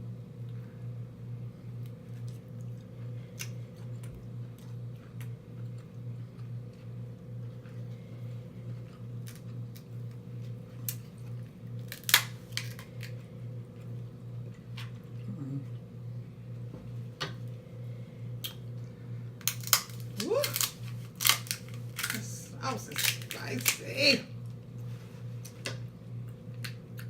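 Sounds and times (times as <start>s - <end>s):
steady low hum: 0.0s - 27.0s
crab shell cracking: 9.2s - 10.2s, 11.8s - 13.2s, 19.4s - 23.9s.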